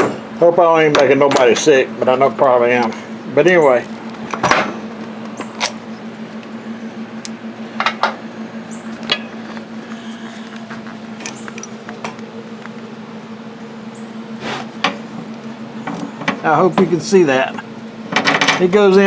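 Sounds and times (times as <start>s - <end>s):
steady low hum: 0.0s - 19.0s
metallic clicks and clinks of tools: 5.5s - 5.8s.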